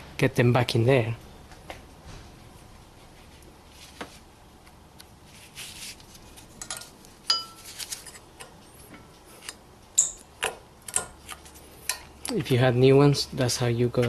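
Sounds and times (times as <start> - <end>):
sharp ringing metallic clink: 7.3 - 7.6.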